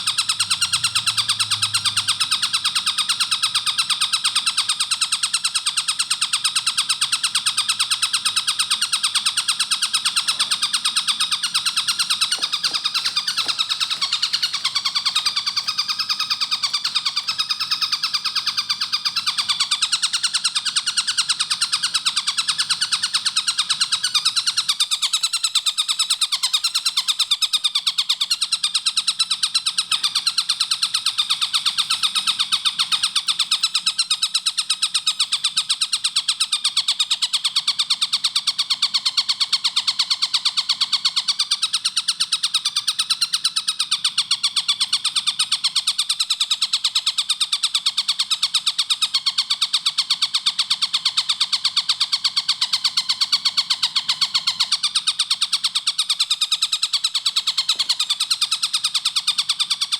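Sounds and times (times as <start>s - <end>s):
kingfisher calling rapidly: 8.8s - 18.3s.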